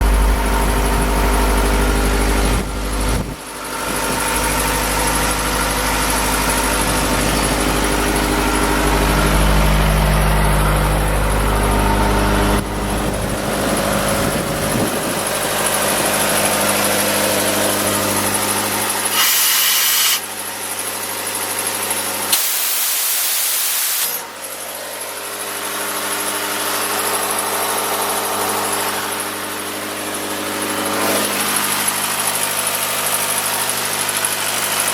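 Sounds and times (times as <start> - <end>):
diesel air compressor running: 0.0 - 34.9
air hiss bursts: 19.1 - 20.2, 22.3 - 24.2.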